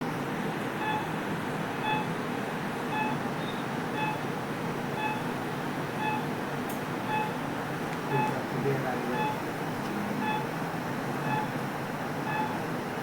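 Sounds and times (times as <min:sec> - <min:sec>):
patient monitor beeping: 0:00.8 - 0:01.1, 0:01.8 - 0:02.2, 0:02.9 - 0:06.4, 0:07.0 - 0:12.8
background hiss of equipment: 0:02.9 - 0:13.0.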